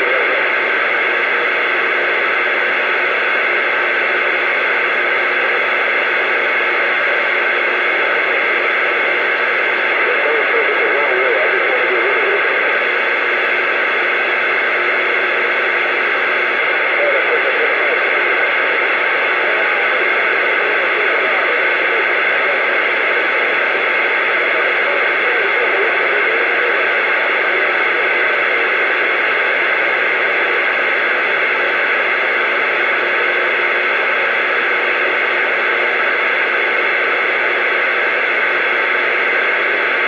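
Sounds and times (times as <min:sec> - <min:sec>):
radio static hiss: 0:00.0 - 0:40.0.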